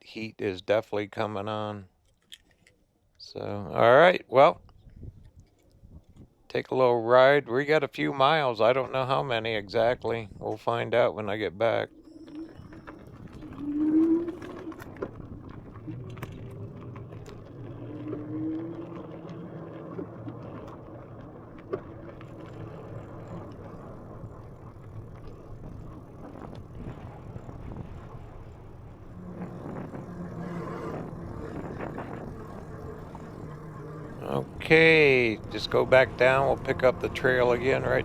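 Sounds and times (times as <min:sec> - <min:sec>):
tyres rolling on trail: 0:05.4 - 0:38.0
electric motor hum: 0:11.9 - 0:38.0
bike clicks and rattles: 0:12.0 - 0:38.0.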